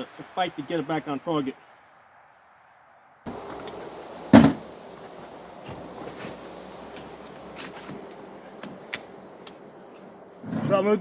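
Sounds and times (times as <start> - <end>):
light clicks and scraping: 5.0 - 10.9.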